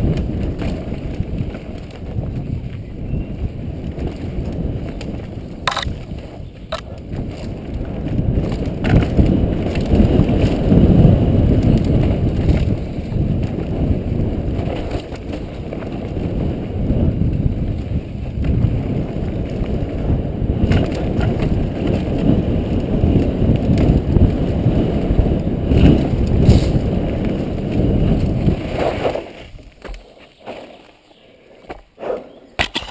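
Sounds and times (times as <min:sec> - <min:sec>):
wind buffeting microphone: 0:00.0 - 0:30.0
bike tyres rumbling on dirt: 0:00.0 - 0:32.9
bike clattering: 0:32.6 - 0:32.9.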